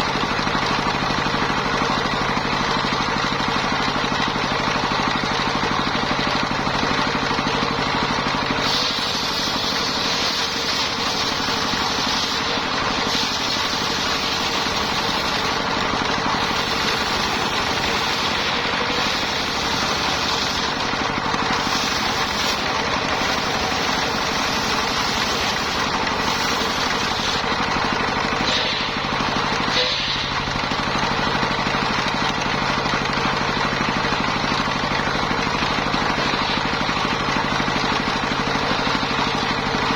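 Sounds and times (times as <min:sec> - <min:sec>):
sawmill engine running: 0:00.0 - 0:39.9
saw blade cutting wood: 0:08.5 - 0:27.7, 0:28.3 - 0:30.6.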